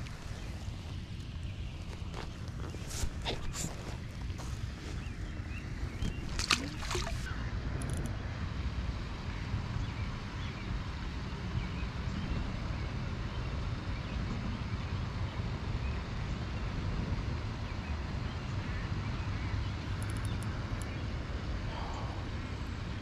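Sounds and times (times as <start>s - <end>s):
sharp clicks: 20.0s - 20.9s.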